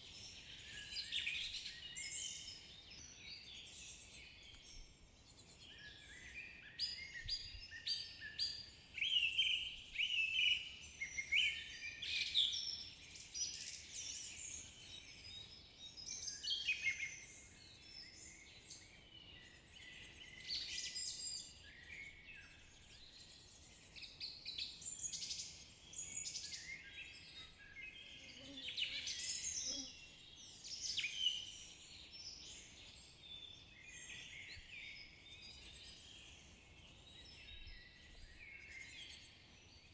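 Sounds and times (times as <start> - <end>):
songbirds chirping and trilling: 0.1 - 39.9.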